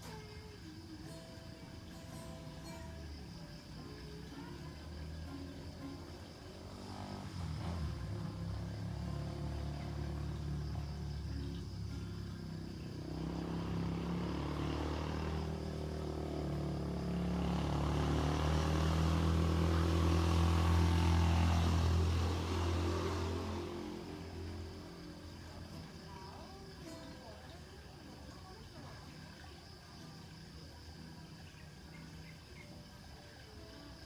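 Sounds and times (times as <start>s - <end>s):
vehicle engine passing by: 1.1s - 27.2s.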